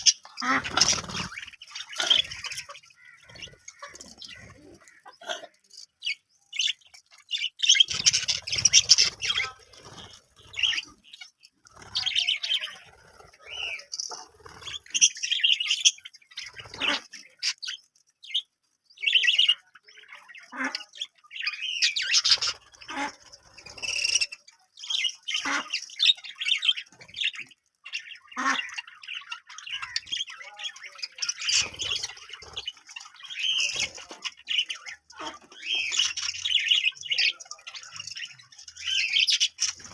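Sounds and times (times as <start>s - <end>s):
budgerigar squawks: 0.0s - 5.4s
budgerigars chirping and chattering: 0.0s - 39.9s.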